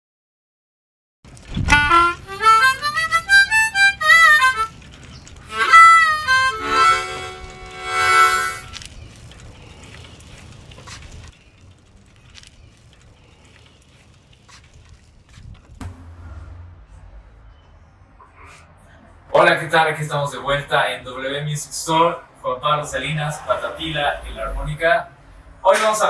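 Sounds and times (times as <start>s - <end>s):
harmonica playing: 1.7s - 4.7s, 5.5s - 8.8s.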